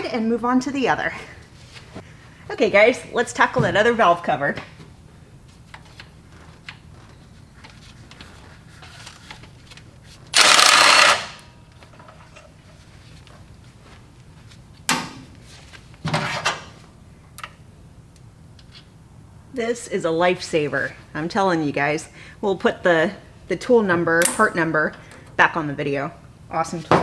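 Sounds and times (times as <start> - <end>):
power tool bursts: 10.4 - 11.5
tools clicking on metal: 10.4 - 11.5.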